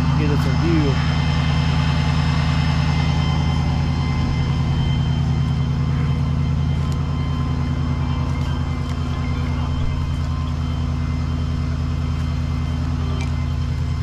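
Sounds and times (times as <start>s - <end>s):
truck engine idling: 0.0s - 14.0s.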